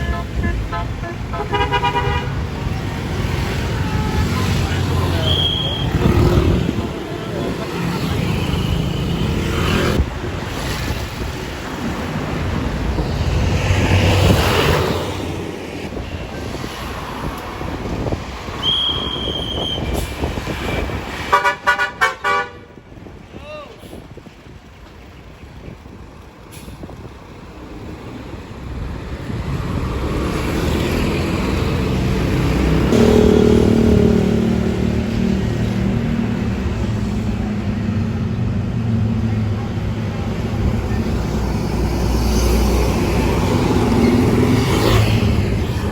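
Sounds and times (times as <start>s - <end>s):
bus passing by: 0.0s - 45.9s.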